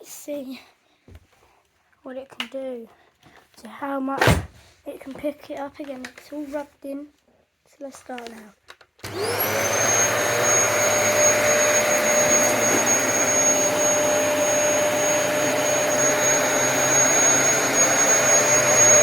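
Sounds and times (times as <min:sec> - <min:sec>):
vacuum cleaner running: 0:09.0 - 0:19.0.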